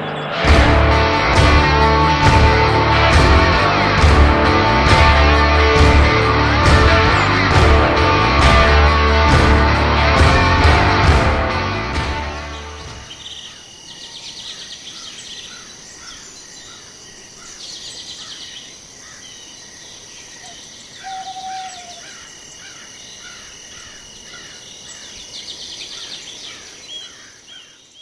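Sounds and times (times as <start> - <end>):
dry rapid bird trill: 0.0 - 9.0, 20.3 - 28.0
short bird chirps: 20.4 - 22.0.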